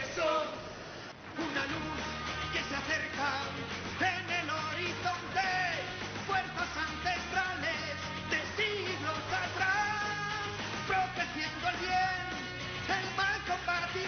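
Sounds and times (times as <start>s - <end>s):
rock song with sung vocals: 1.3s - 14.0s
steady bass line and beat: 1.4s - 14.0s.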